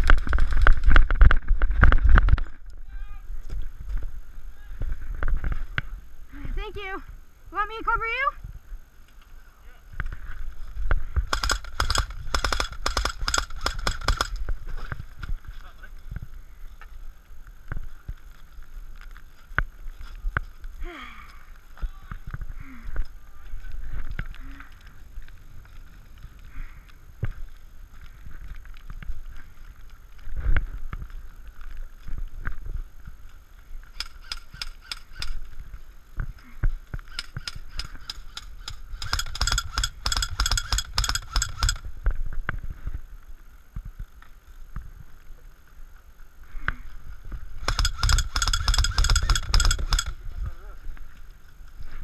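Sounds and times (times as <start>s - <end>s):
knocks of movement: 10.8s - 15.4s, 37.0s - 41.9s, 47.6s - 50.2s
airsoft guns firing bursts: 11.3s - 14.5s, 37.1s - 41.9s, 47.6s - 50.2s.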